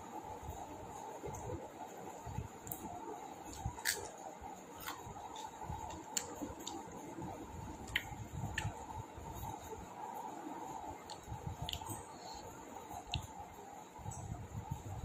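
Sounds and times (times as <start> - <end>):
faint hum: 0.0 - 15.0
person chewing: 3.4 - 4.2, 4.8 - 8.9, 11.0 - 12.4.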